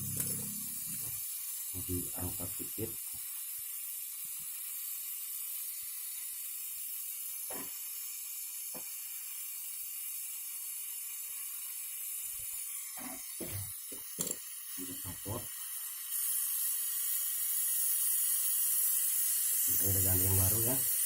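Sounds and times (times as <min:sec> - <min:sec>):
gas hissing through pipe: 0:00.0 - 0:21.0.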